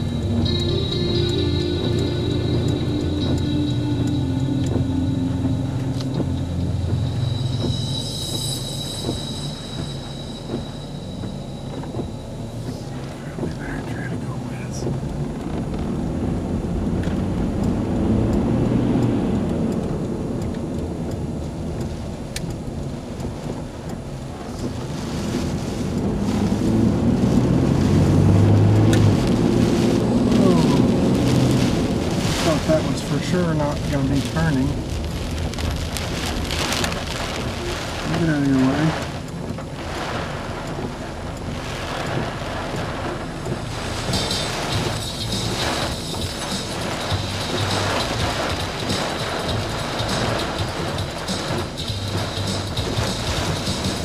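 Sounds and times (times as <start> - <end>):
car engine running: 0.0 - 54.0
sharp ticks: 14.7 - 26.1.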